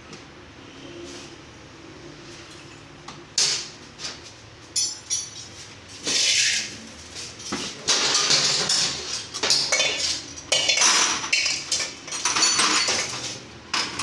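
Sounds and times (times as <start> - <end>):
metal tools clinking and clattering: 4.8 - 5.6, 7.4 - 14.0.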